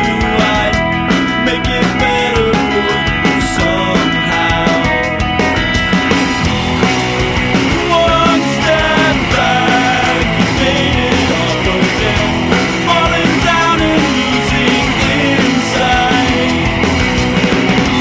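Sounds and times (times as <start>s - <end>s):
rock music with singing: 0.0s - 18.0s.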